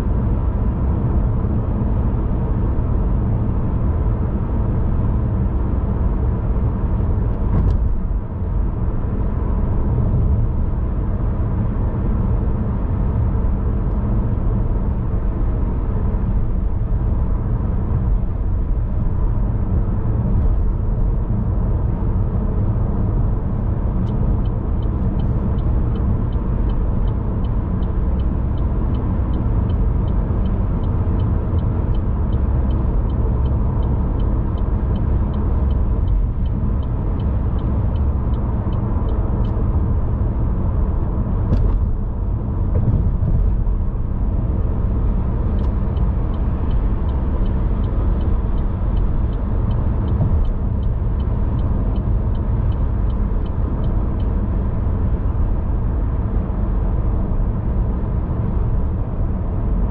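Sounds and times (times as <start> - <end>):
road and engine noise in car: 0.0 - 59.9
faint regular ticking: 24.0 - 39.6, 45.0 - 54.7.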